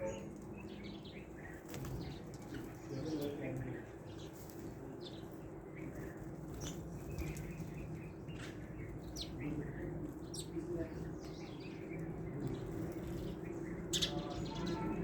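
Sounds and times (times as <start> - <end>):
birds chirping: 0.0 - 15.0
low background noise: 0.0 - 15.0.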